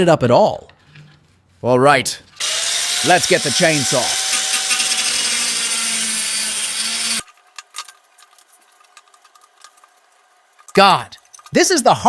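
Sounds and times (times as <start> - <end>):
power saw grinding metal: 2.4 - 7.3.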